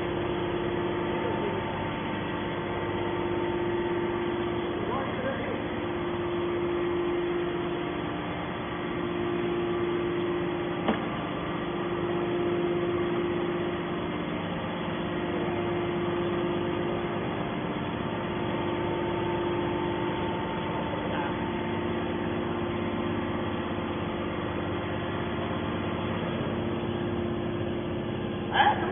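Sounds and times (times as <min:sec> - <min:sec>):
hydraulic power unit humming: 0:00.0 - 0:28.9.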